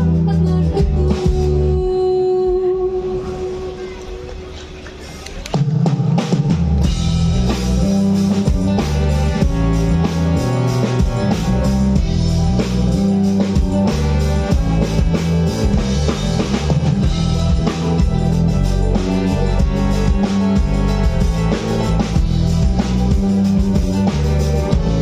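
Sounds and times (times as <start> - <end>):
bass guitar: 0.0 - 2.7, 3.6 - 25.0
electric guitar: 6.8 - 25.0.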